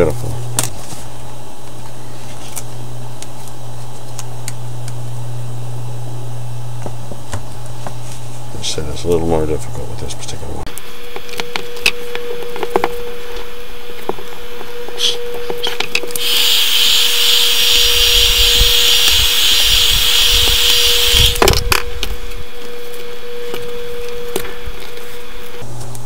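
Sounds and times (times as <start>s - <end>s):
heat gun hissing: 15.0s - 21.6s.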